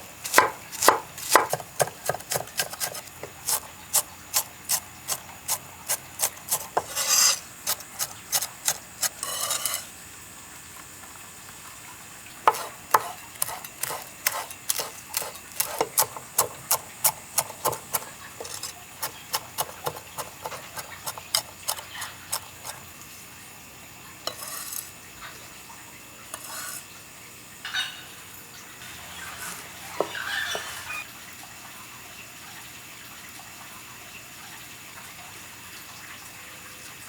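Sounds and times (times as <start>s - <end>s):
knife chopping on cutting board: 0.2s - 3.6s, 4.3s - 9.8s, 12.5s - 22.8s.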